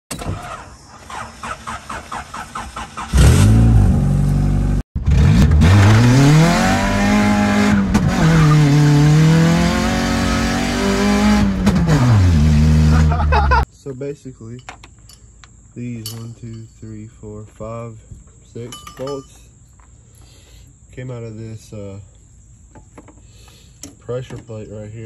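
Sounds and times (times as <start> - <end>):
car engine revving: 1.4 - 13.6.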